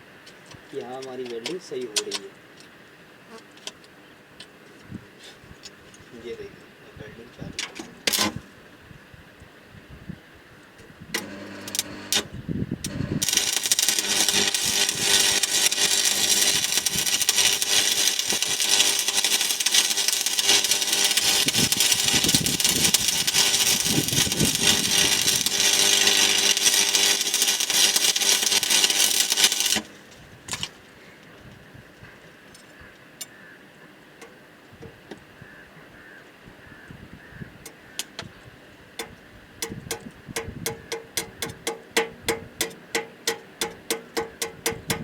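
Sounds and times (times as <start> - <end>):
steady hum: 11.2 - 30.8
welding arc crackling: 11.2 - 30.9.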